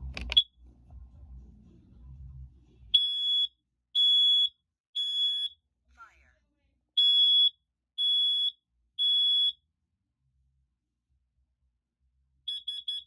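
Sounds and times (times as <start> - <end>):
smoke alarm beeping: 3.0 - 5.6, 7.0 - 9.6, 12.5 - 13.0.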